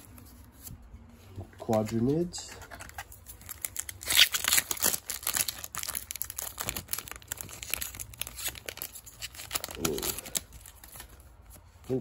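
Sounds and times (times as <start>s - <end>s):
foil wrapper crinkling: 2.8s - 11.2s.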